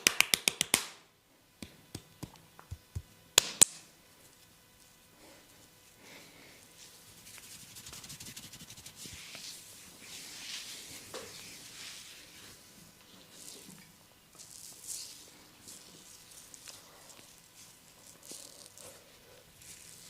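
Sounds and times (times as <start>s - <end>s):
hands rubbing skin and hair: 6.8s - 13.7s, 14.4s - 20.0s.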